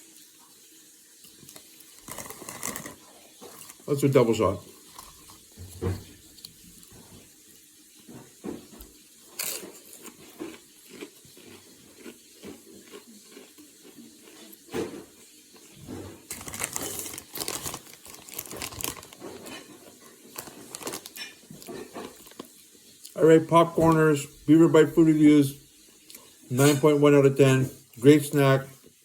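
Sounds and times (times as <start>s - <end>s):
crunching chips: 1.4s - 5.5s, 9.3s - 14.7s, 15.6s - 23.2s.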